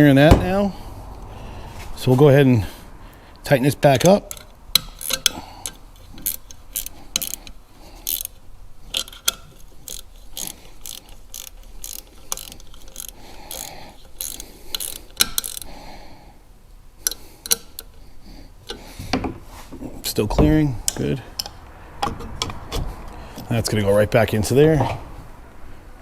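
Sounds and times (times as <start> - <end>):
ratchet wrench clicking: 4.0 - 15.7, 17.0 - 18.0.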